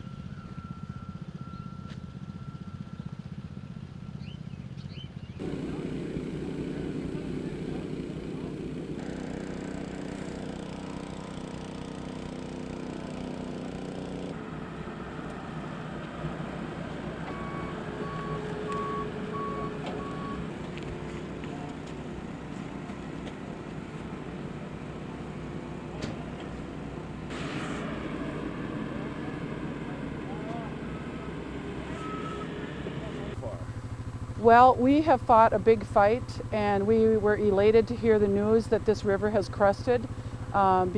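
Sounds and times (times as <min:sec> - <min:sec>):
reversing alarm beeping: 0:00.0 - 0:04.3, 0:17.2 - 0:20.5, 0:30.2 - 0:40.9
heavy vehicle engines: 0:00.0 - 0:40.9.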